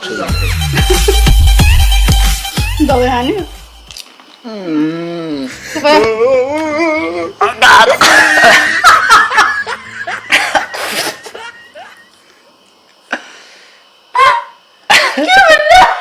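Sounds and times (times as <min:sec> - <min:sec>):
person laughing hard: 0:00.8 - 0:01.4, 0:05.5 - 0:12.0, 0:14.9 - 0:16.0.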